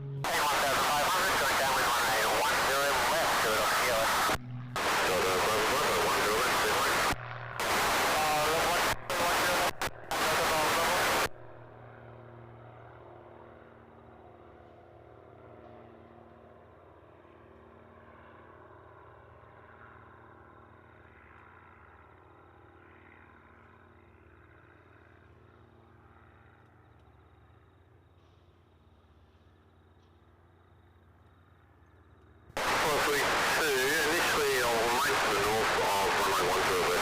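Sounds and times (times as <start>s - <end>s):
distant aircraft engine drone: 0.0s - 37.0s.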